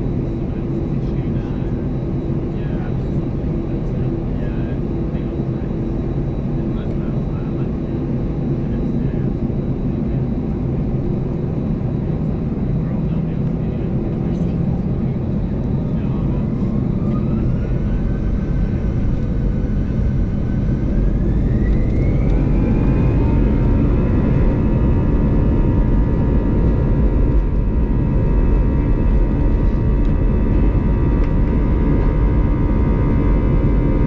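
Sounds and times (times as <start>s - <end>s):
heavy low rumble: 0.0s - 34.0s
jet engines spooling up: 12.3s - 34.0s.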